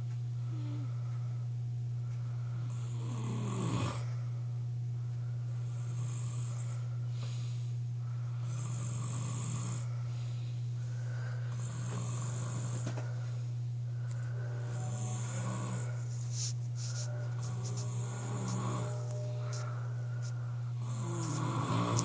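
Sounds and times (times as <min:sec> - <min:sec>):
steady low hum: 0:00.0 - 0:22.0
man snoring loudly: 0:02.7 - 0:04.1, 0:05.7 - 0:06.8, 0:08.4 - 0:09.9, 0:11.5 - 0:13.0, 0:14.6 - 0:16.0, 0:17.4 - 0:19.7, 0:20.8 - 0:22.0.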